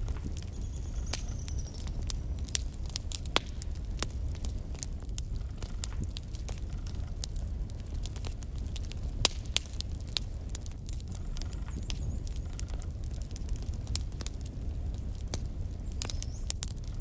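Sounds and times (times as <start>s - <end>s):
fire crackling and popping: 0.0s - 17.0s
flames rumbling: 0.0s - 17.0s.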